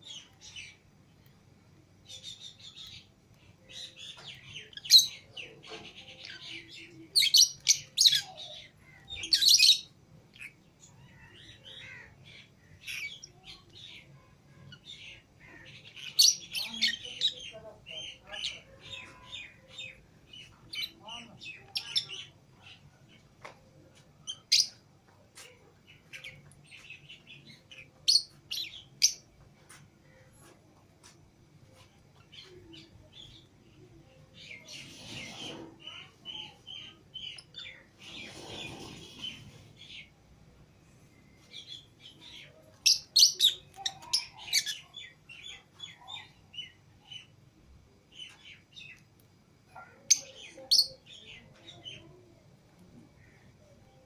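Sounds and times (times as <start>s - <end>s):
lovebirds chirping: 0.0s - 54.0s
rustling noise: 38.0s - 39.8s.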